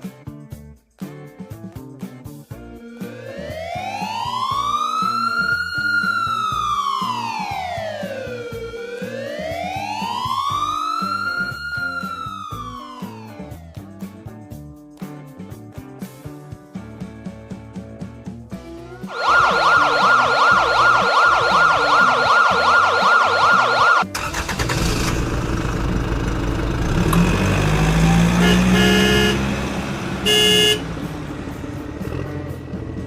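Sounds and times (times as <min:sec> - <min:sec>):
siren yelping: 0:03.0 - 0:13.5, 0:19.1 - 0:24.1
vehicle engine: 0:21.8 - 0:33.0
horn honks: 0:28.0 - 0:31.1.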